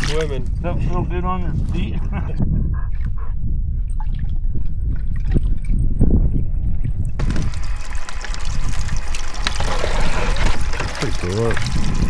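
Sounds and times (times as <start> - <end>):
water splashing and trickling: 0.0 - 0.4, 4.0 - 6.0, 6.8 - 12.0
wind rumbling on microphone: 0.0 - 12.0.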